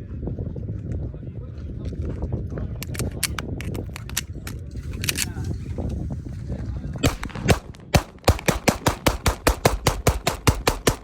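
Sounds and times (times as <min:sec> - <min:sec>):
pistol shots: 0:07.0 - 0:11.0.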